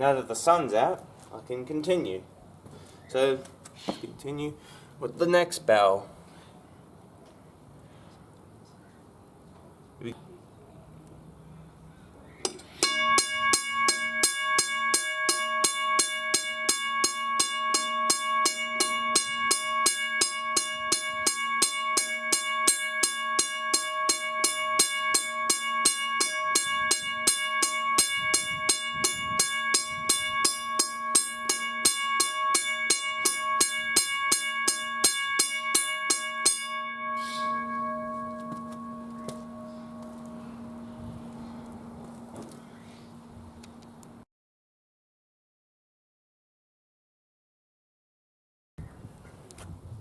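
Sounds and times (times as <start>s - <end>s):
railway crossing bell ringing: 12.7s - 44.2s.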